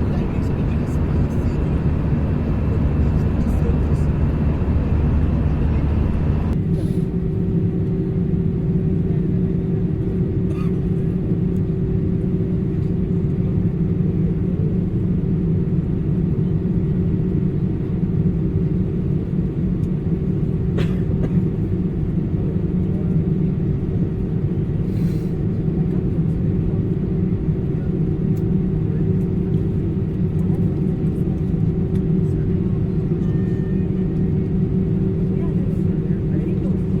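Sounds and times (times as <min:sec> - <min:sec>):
vehicle interior rumble: 0:00.0 - 0:06.6.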